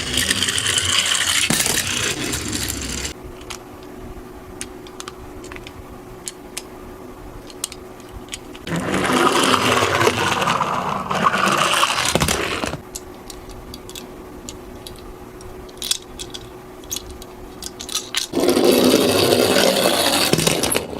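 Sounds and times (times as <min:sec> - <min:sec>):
toy cars rattling down slope: 0:00.0 - 0:03.1, 0:08.7 - 0:12.7.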